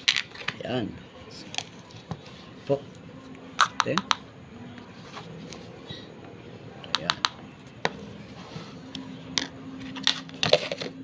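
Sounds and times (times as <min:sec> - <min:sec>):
containers and utensils clicking: 0:09.4 - 0:11.0.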